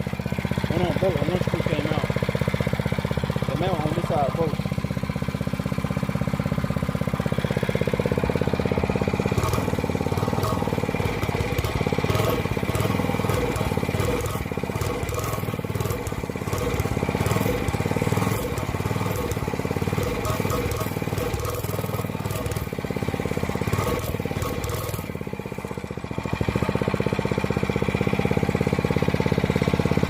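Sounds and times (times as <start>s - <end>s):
motorbike engine idling: 0.0s - 30.0s
rattling and clicking: 9.0s - 22.8s, 23.6s - 25.1s.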